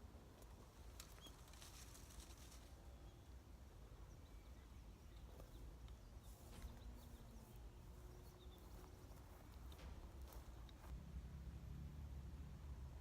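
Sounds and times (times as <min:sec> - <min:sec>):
faint bird chirps: 0:01.0 - 0:01.9
low rumble: 0:09.9 - 0:13.0.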